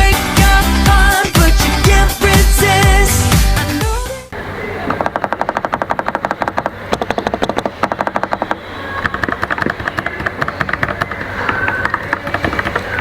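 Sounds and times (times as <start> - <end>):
mechanical keyboard typing: 4.9 - 13.0.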